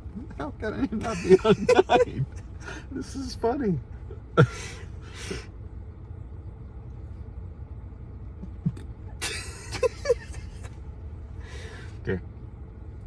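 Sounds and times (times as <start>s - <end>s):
steady low rumble: 0.0s - 13.0s
breathy sound: 2.5s - 3.0s, 4.4s - 5.5s, 11.4s - 11.9s.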